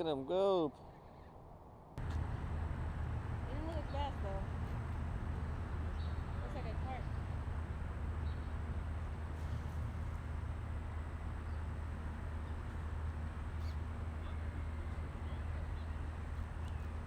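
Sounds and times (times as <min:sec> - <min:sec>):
low outdoor rumble: 0:01.6 - 0:17.0.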